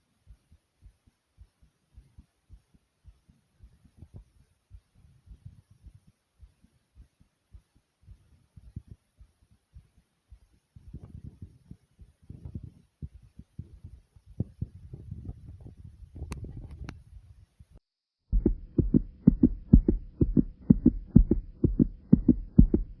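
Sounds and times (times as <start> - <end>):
fast heartbeat thumps: 0.3 - 17.4, 18.3 - 23.0.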